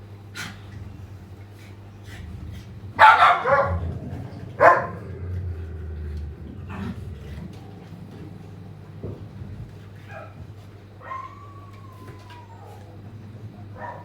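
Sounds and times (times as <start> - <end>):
dog barking: 3.0 - 5.4, 11.0 - 11.7, 13.8 - 14.0.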